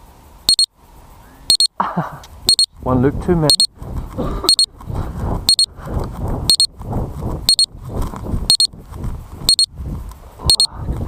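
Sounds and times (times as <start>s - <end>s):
high electronic double beeps: 0.5s - 0.7s, 1.5s - 1.7s, 2.5s - 2.7s, 3.5s - 3.7s, 4.5s - 4.7s, 5.5s - 5.7s, 6.5s - 6.7s, 7.5s - 7.7s, 8.5s - 8.7s, 9.5s - 9.7s, 10.5s - 10.7s
steady low rushing noise: 2.4s - 11.0s.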